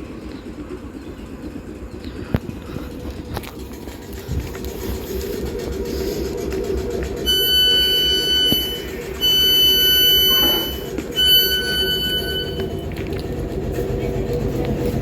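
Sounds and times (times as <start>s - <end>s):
electric train hum: 0.0s - 15.0s
long electronic beeps: 7.0s - 13.1s.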